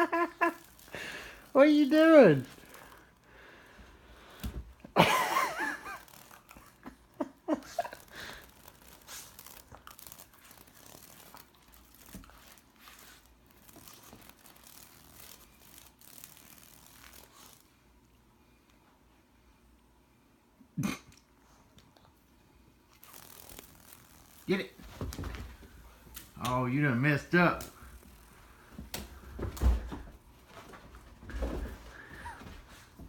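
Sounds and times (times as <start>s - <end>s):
dog chewing insect: 8.1s - 17.5s, 22.9s - 24.6s.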